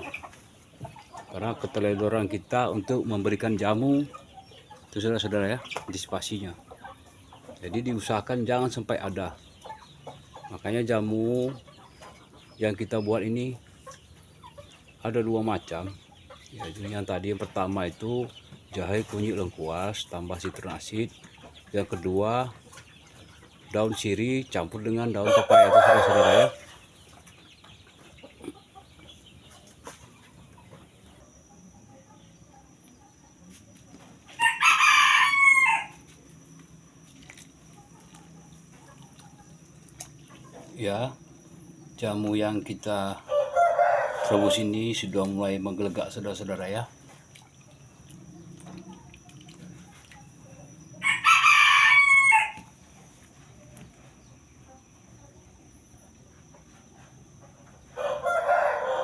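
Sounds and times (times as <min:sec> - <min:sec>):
faint low hum: 0:00.0 - 0:59.0
rooster crowing: 0:25.2 - 0:26.6, 0:34.4 - 0:36.0, 0:43.2 - 0:44.7, 0:51.0 - 0:52.7, 0:57.9 - 0:59.0.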